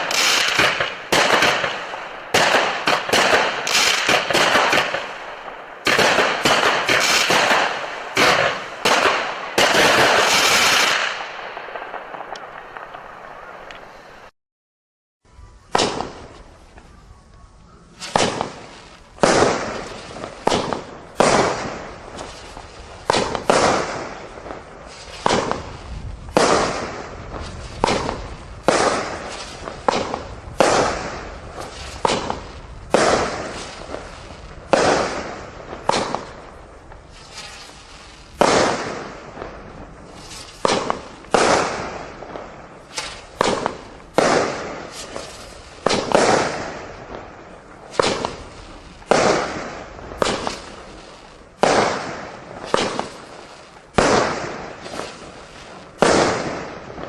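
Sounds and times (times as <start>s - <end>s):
fireworks bursting with bangs: 0.0s - 14.3s, 15.7s - 17.0s, 17.9s - 57.0s.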